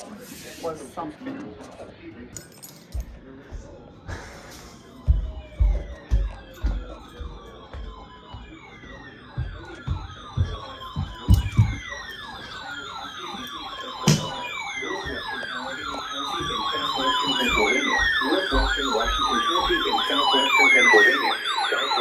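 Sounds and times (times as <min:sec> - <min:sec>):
electronic siren tones: 0:03.0 - 0:22.0.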